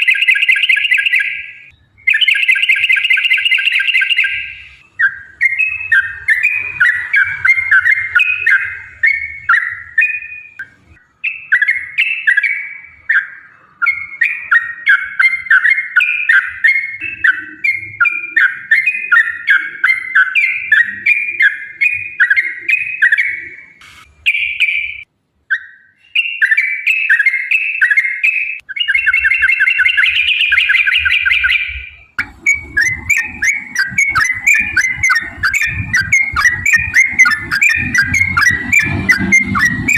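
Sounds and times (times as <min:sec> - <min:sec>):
bird singing bubbly chattering notes: 0:00.0 - 0:25.1, 0:27.8 - 0:39.9
lower denser sound: 0:31.7 - 0:39.9.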